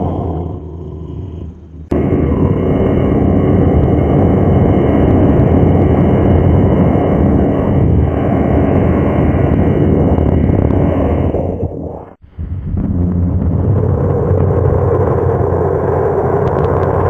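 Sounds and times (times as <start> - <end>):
monster roar: 0.0 - 5.9.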